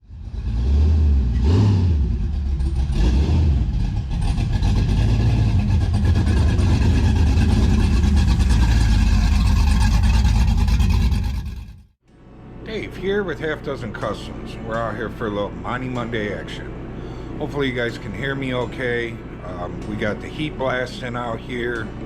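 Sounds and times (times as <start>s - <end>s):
car engine revving: 0.0s - 11.8s.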